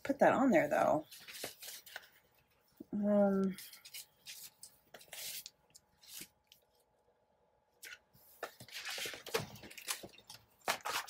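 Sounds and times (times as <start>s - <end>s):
paper rustling: 1.1s - 2.6s, 3.5s - 6.7s, 7.8s - 11.0s.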